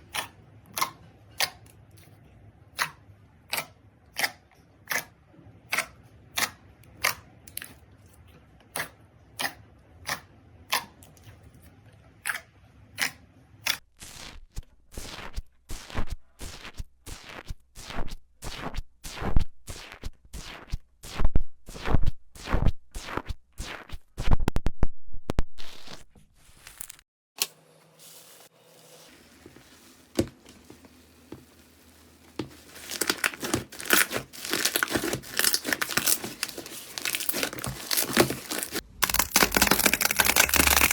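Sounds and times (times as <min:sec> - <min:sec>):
slime crunchy crinkling: 0:14.0 - 0:24.0, 0:28.8 - 0:40.9
slime popping and crackling: 0:31.5 - 0:40.9.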